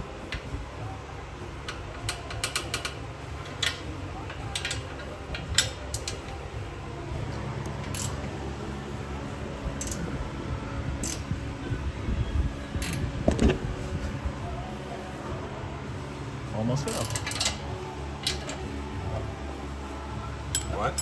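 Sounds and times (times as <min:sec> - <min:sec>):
steady low hum: 0:00.0 - 0:21.0
metallic clicks of handled tools: 0:01.7 - 0:06.4, 0:07.8 - 0:08.2, 0:09.8 - 0:10.0, 0:16.9 - 0:17.6.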